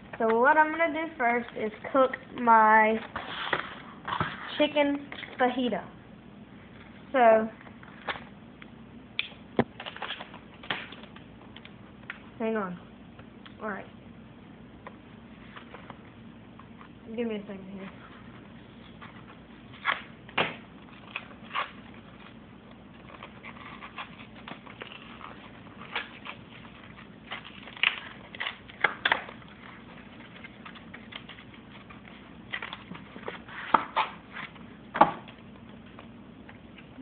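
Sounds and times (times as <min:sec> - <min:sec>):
plastic packaging crinkling: 0:20.8 - 0:34.7.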